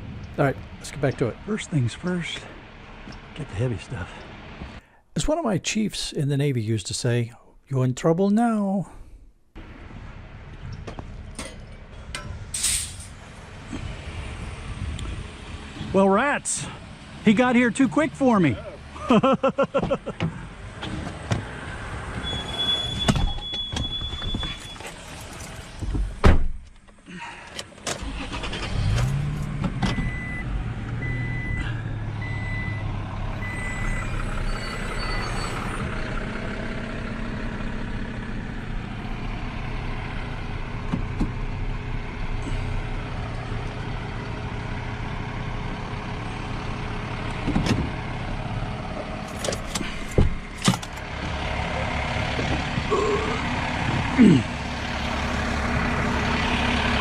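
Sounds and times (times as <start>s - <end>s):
diesel engine running: 0.0s - 5.0s, 27.1s - 57.0s
reversing alarm beeping: 22.2s - 24.9s, 29.9s - 35.8s.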